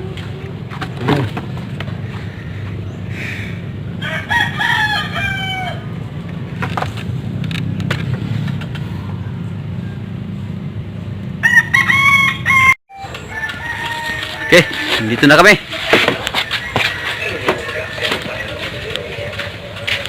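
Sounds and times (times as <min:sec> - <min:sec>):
rooster crowing: 0:03.4 - 0:06.0, 0:11.4 - 0:15.5, 0:16.2 - 0:18.4.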